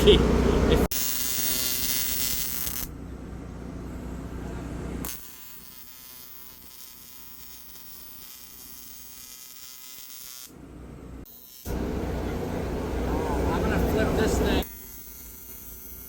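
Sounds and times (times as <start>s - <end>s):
welding arc buzzing: 0.0s - 10.6s, 11.2s - 16.0s
low rumbling noise: 11.7s - 14.6s.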